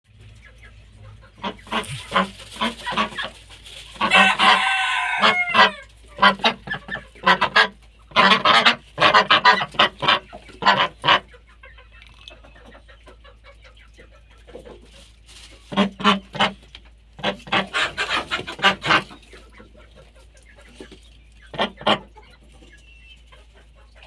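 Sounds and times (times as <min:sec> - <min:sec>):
fowl calling: 0:01.3 - 0:11.3.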